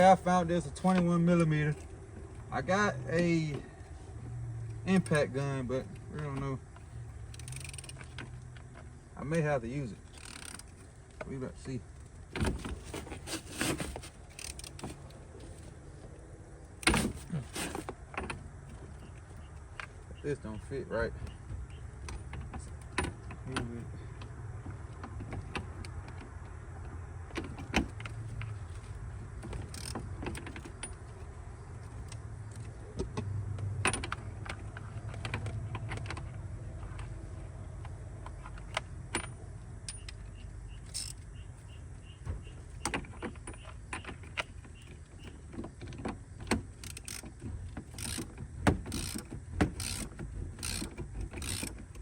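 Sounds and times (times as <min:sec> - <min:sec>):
wrench socket metallic clicks: 0:07.3 - 0:08.2, 0:10.1 - 0:10.8, 0:29.7 - 0:30.0, 0:40.9 - 0:41.3, 0:46.8 - 0:47.2, 0:47.9 - 0:48.3, 0:48.9 - 0:52.0.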